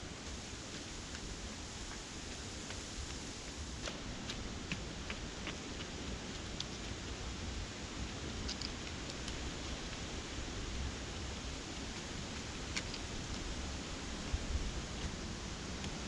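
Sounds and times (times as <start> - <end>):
wind rushing on microphone: 6.0 - 16.0
faint clicks and rustles: 8.0 - 10.2, 11.5 - 16.0.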